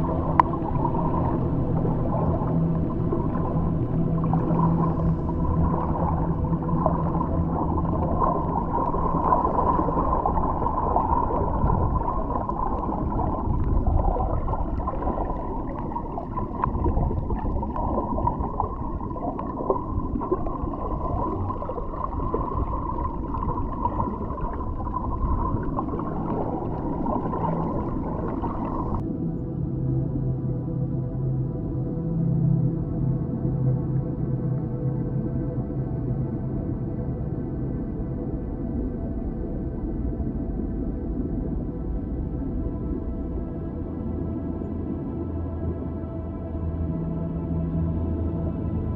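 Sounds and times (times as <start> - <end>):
water bubbling and gurgling: 0.0 - 29.1
faint steady low tones: 0.0 - 48.9
underwater low rumble: 0.0 - 48.9.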